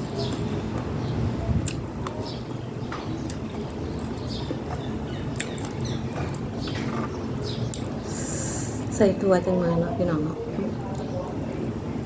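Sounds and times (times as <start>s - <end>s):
lip clicks: 1.6s - 2.2s
wet chewing of noodles: 1.6s - 7.9s.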